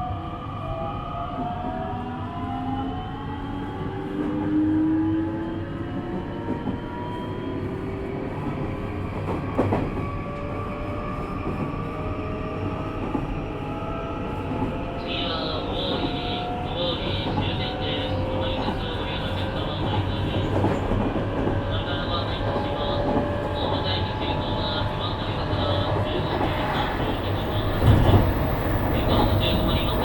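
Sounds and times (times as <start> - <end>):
train running rumble: 14.5 - 30.0.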